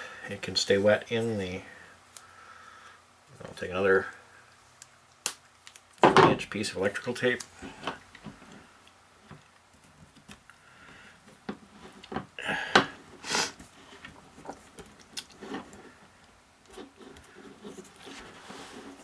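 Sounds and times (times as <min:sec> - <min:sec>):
small clicks and rustles: 0:04.7 - 0:06.0, 0:07.2 - 0:12.4, 0:13.6 - 0:19.0.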